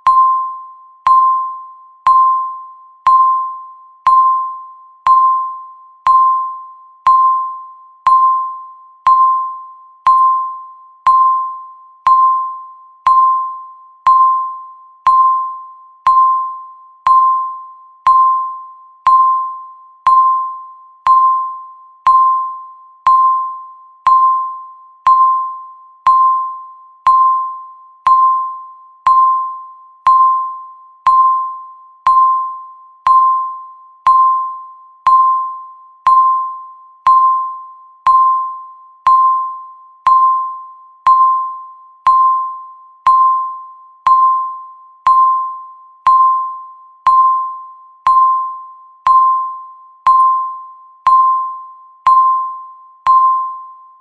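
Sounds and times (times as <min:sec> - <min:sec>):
countdown timer beeping: 0:00.0 - 0:54.0.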